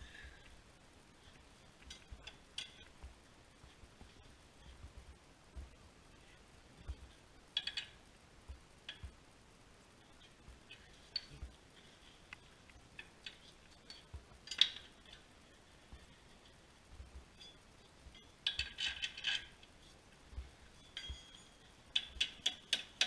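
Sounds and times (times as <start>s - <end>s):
metal tools clinking: 13.0s - 15.2s, 18.2s - 19.6s, 20.8s - 23.0s.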